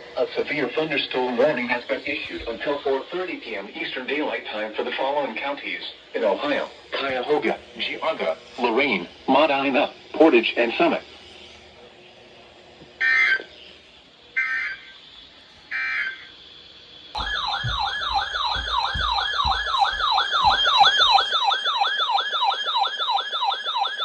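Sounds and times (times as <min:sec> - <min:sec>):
sweeping siren-like alert tone: 0:17.2 - 0:24.0.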